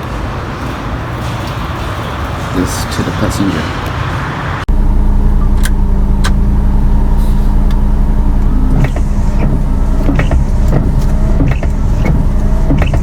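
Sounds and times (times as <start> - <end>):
car running with mechanical hum: 3.9 - 13.0
sharp clicks and short knocks: 8.4 - 13.0.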